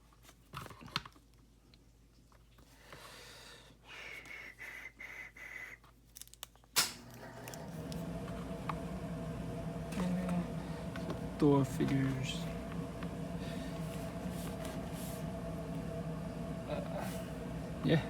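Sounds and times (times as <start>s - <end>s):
steady low hum: 7.1s - 18.0s.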